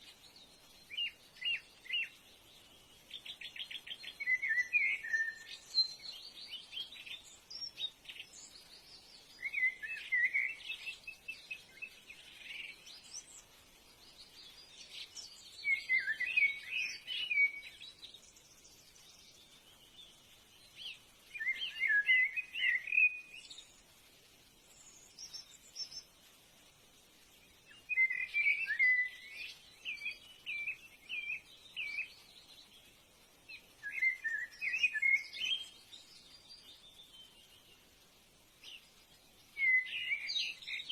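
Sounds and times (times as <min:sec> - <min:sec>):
songbird warbling chirps: 0:00.0 - 0:26.3, 0:27.3 - 0:40.9.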